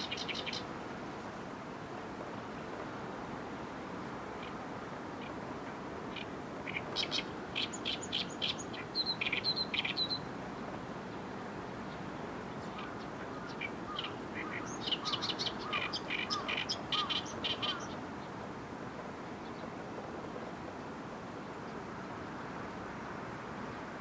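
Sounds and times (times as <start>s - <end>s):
reed warbler singing: 0.0s - 1.4s, 4.3s - 18.4s, 19.2s - 19.8s
background hiss: 0.0s - 24.0s.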